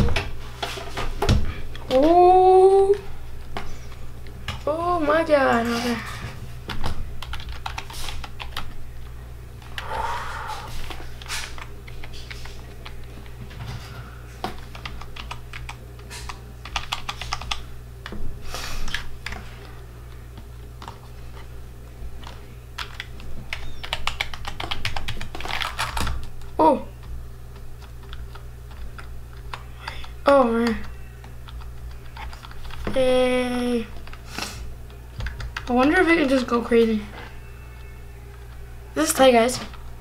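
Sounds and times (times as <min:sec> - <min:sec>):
steady low hum: 0:00.0 - 0:40.0
keyboard typing clicks: 0:22.2 - 0:26.4.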